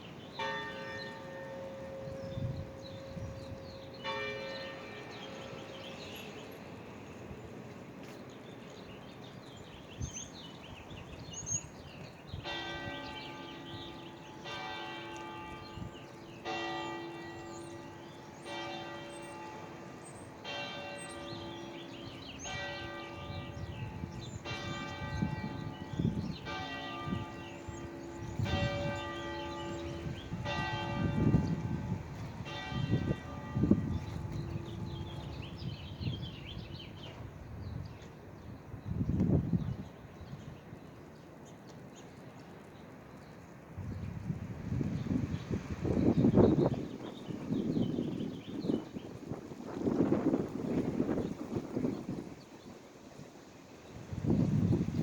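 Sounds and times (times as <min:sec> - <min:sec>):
wind buffeting microphone: 0:00.0 - 0:40.8, 0:43.2 - 0:52.8, 0:53.8 - 0:55.0.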